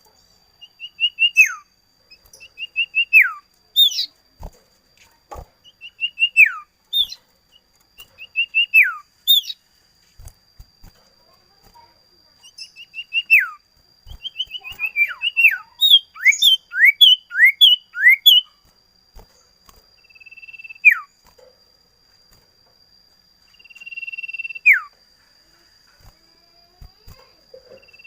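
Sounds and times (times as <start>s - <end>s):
songbird whistling song: 0.1s - 4.2s, 5.6s - 9.7s, 12.4s - 18.7s, 20.0s - 21.2s, 23.4s - 25.0s, 27.1s - 28.0s.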